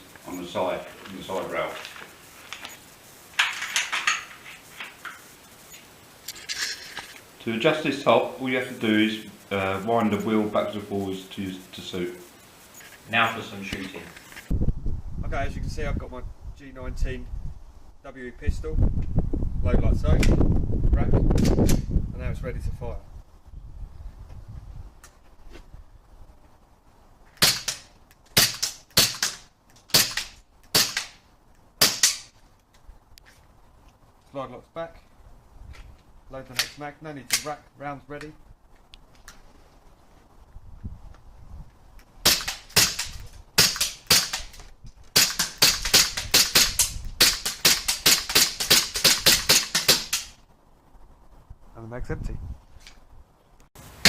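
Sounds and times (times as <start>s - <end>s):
airsoft pistol shots: 27.4s - 31.2s, 31.8s - 32.3s, 42.2s - 50.4s.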